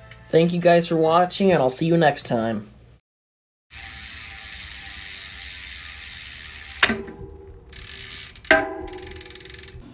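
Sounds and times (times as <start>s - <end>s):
bike freehub ratcheting buzz: 3.7s - 9.9s
sharp ringing metallic hit: 8.5s - 9.5s.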